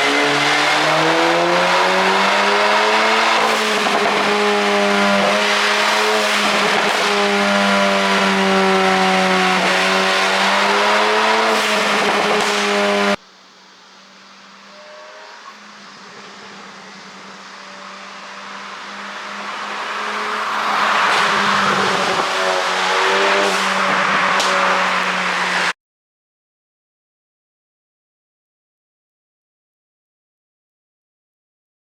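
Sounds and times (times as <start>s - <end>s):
car engine revving: 0.0s - 13.2s, 13.8s - 25.8s.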